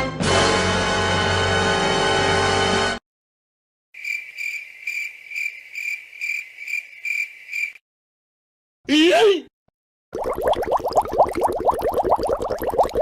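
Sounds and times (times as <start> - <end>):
crickets chirping: 4.0 - 7.8.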